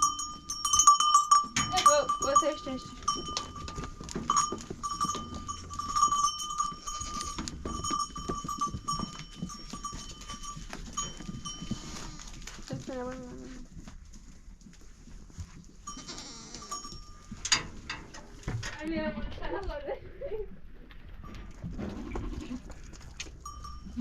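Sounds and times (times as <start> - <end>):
sheep bells clanking: 0.0 - 13.2, 15.7 - 18.4, 22.9 - 24.0
sheep bleating: 15.9 - 16.7.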